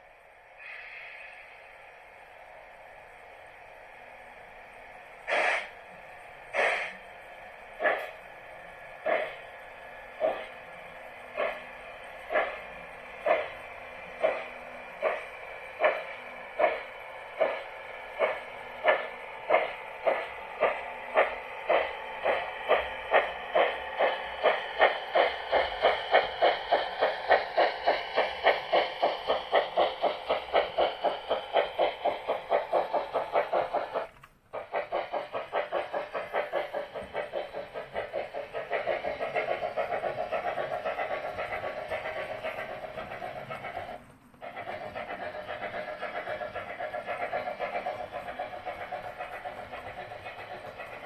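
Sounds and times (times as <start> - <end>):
model locomotive steam chuffing: 0.0 - 51.0.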